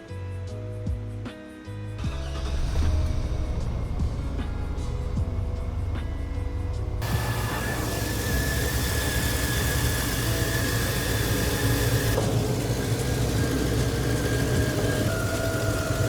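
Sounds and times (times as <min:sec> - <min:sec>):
engine running: 0:02.0 - 0:16.0.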